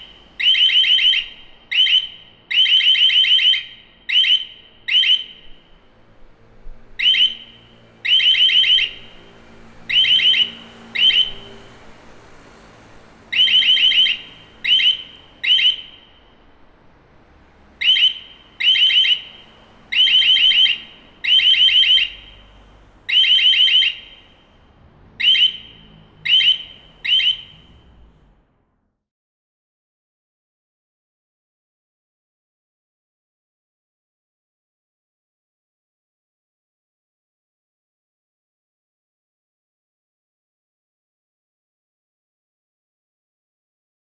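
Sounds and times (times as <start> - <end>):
building alarm pulsing tone: 6.9 - 16.3, 23.1 - 28.0.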